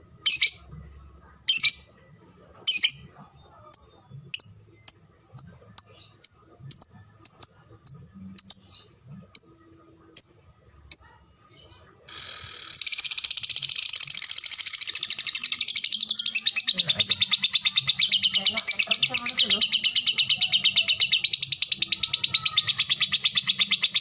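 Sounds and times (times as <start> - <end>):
lovebird chattering trill: 12.7 - 24.0.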